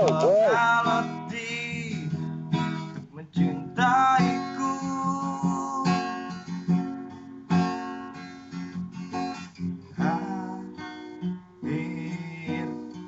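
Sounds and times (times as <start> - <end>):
person singing: 0.0 - 1.9
acoustic guitar strumming: 0.0 - 13.0.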